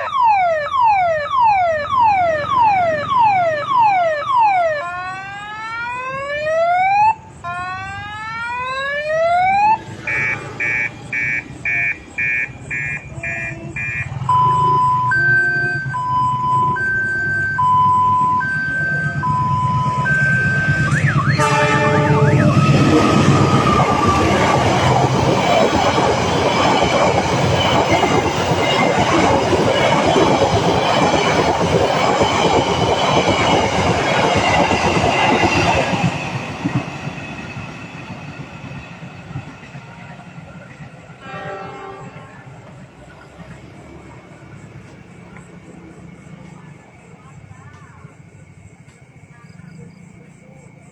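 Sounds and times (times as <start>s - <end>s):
electronic warning siren: 0.0s - 39.4s
train passing rumble: 1.5s - 4.0s, 9.0s - 50.9s
train horn note: 20.7s - 25.0s, 41.2s - 42.4s.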